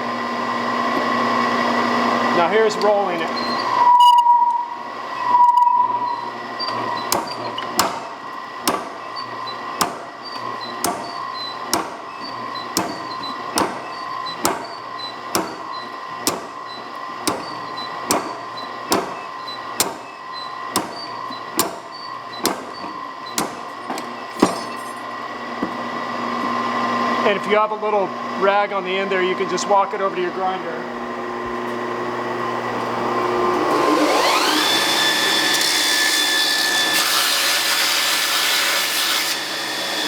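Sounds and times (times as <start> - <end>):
power hammer blows on steel: 7.0 - 24.7.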